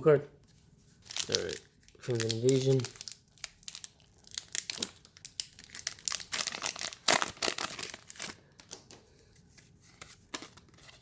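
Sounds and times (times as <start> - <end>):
foil wrapper crinkling: 1.0 - 8.9.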